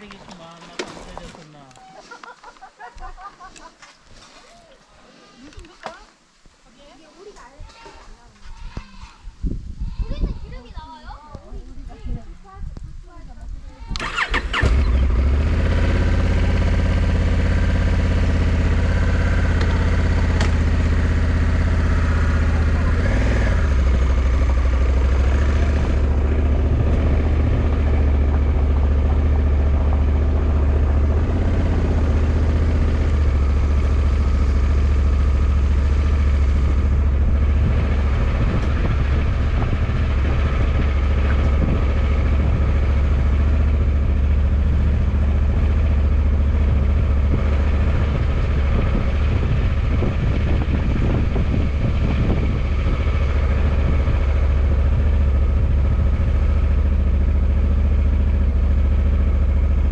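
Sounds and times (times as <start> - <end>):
motorcycle engine idling: 14.0 - 59.9.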